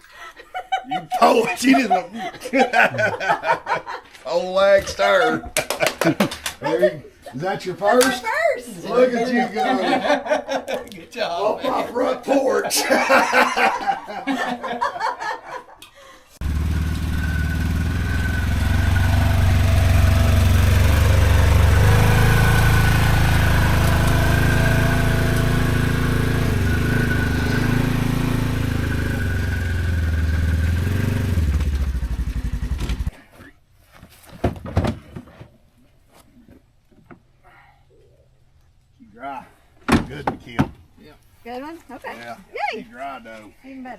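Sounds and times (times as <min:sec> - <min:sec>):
vehicle engine running: 0:16.4 - 0:33.1.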